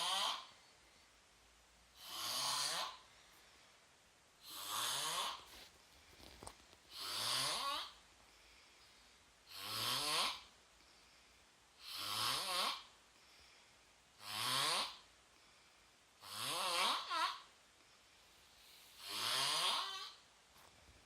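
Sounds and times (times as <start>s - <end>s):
person snoring: 0.0s - 0.6s, 2.0s - 3.1s, 4.4s - 5.5s, 6.9s - 8.0s, 9.5s - 10.5s, 11.8s - 12.9s, 14.2s - 15.0s, 16.2s - 17.4s, 18.9s - 20.2s.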